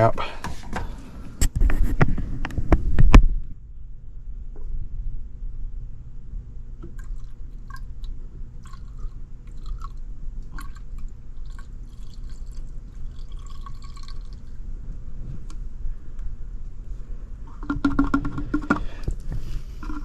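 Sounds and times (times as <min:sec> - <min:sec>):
steady low hum: 0:00.0 - 0:20.0
liquid dripping and splashing: 0:06.9 - 0:14.6.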